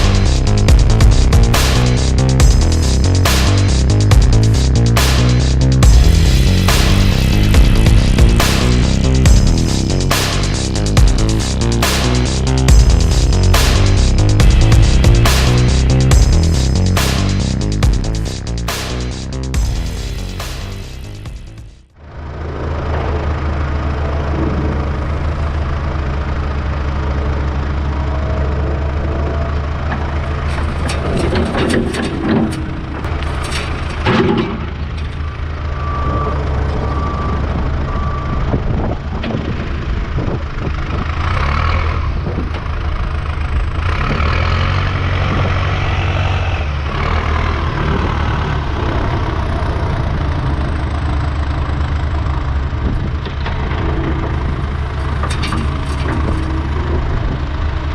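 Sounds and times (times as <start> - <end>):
diesel earthmoving equipment running: 0.0 - 57.9
metal clanks and knocks: 29.9 - 35.3, 53.0 - 57.8
short beeps: 35.7 - 38.4.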